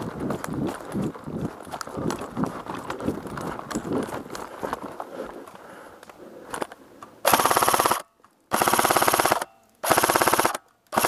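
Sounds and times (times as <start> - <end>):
airsoft rifle firing bursts: 7.2 - 11.0.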